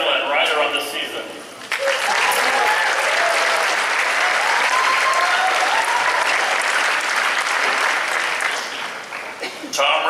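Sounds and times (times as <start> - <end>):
audience applauding: 1.6 - 9.5.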